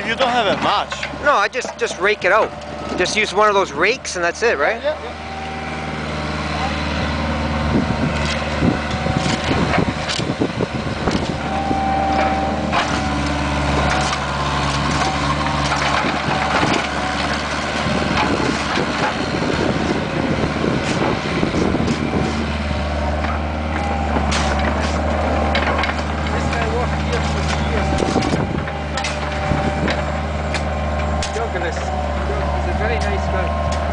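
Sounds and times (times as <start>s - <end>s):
bucket scraping and cracking asphalt: 0.0s - 5.0s, 7.1s - 33.9s
mini excavator running: 0.0s - 33.9s.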